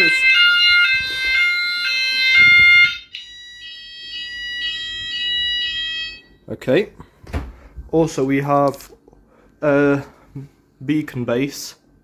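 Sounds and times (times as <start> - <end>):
fire alarm electronic tones: 0.0 - 6.5.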